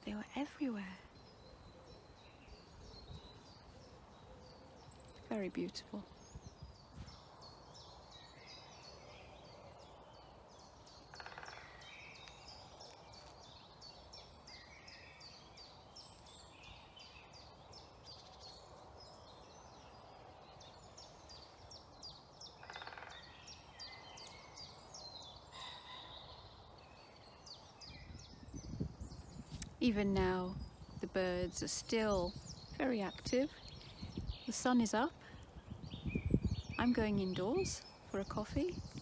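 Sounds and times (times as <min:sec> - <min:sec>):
songbirds singing: 0:00.0 - 0:39.0
woodpecker drumming: 0:11.0 - 0:13.4, 0:22.6 - 0:23.4.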